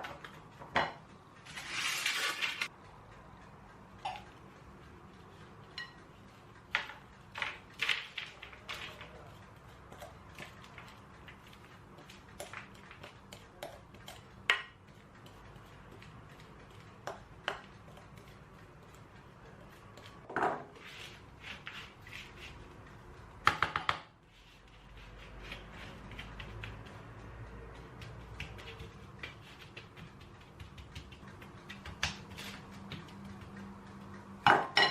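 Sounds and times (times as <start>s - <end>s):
dishes and utensils clinking: 5.7s - 6.1s, 34.4s - 34.9s.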